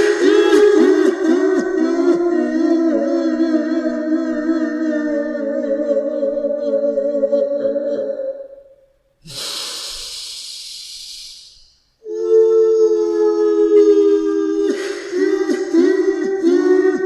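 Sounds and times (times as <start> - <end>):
ghostly woman wailing: 0.0 - 8.6, 12.0 - 17.0
long breathy inhale: 9.2 - 11.9.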